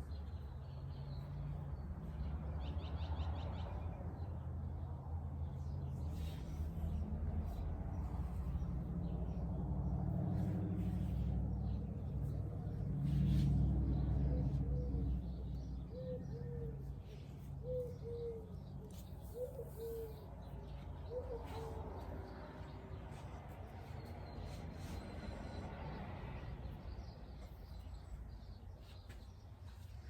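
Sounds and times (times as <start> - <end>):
low steady rumble: 5.5 - 17.9
dove cooing: 15.9 - 16.9, 17.6 - 18.5, 19.2 - 20.3, 21.0 - 21.9.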